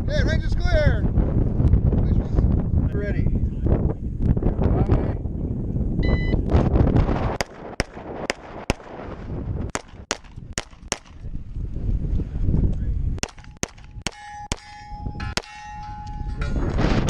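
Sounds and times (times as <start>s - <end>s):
wind buffeting microphone: 0.0s - 17.0s
pistol shots: 7.4s - 9.0s, 9.7s - 11.2s, 13.2s - 15.7s.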